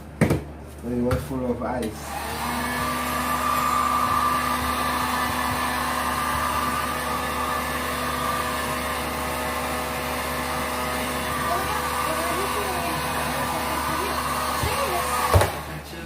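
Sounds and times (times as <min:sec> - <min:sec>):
electric blower motor whining: 0:02.0 - 0:15.9.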